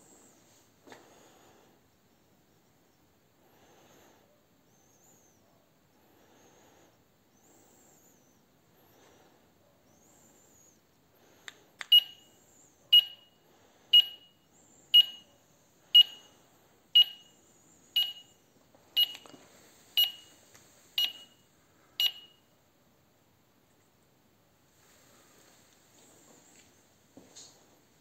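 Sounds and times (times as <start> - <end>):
alarm system beeping: 17.0 - 17.3.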